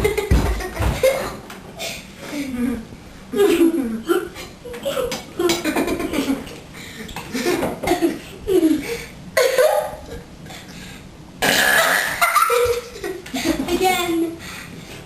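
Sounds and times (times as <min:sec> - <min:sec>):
children laughing: 0:00.0 - 0:01.5, 0:02.4 - 0:10.2, 0:11.8 - 0:14.4
children burping: 0:11.4 - 0:12.4.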